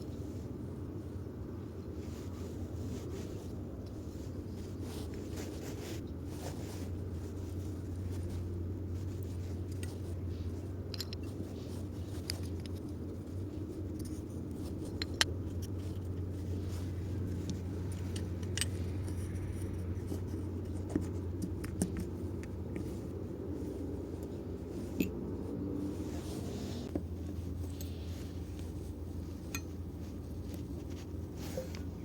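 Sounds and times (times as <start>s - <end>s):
steady low hum: 0.0s - 32.0s
metal parts clicking and tapping: 10.8s - 23.0s, 29.5s - 29.8s.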